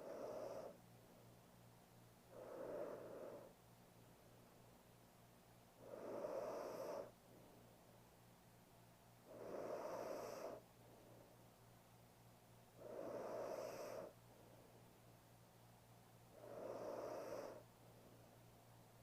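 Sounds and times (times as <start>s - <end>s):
woman snoring softly: 0.0s - 0.8s, 2.3s - 3.5s, 5.8s - 7.2s, 9.2s - 10.6s, 12.8s - 14.2s, 16.3s - 17.7s.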